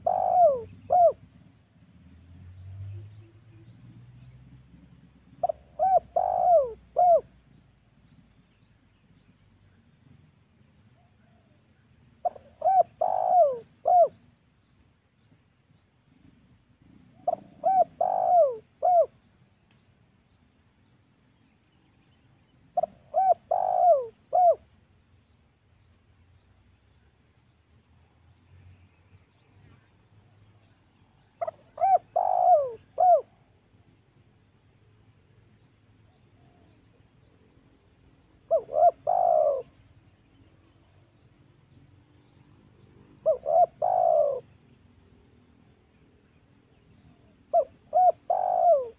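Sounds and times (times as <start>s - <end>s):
dove cooing: 0.0s - 1.3s, 4.8s - 7.4s, 12.2s - 14.2s, 17.1s - 19.2s, 22.8s - 24.7s, 31.4s - 33.4s, 38.5s - 39.8s, 43.2s - 44.6s, 47.3s - 48.9s.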